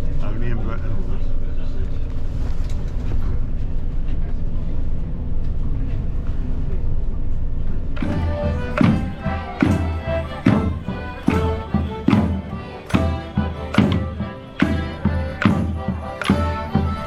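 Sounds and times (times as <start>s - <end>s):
music with sharp beat: 8.0s - 17.0s.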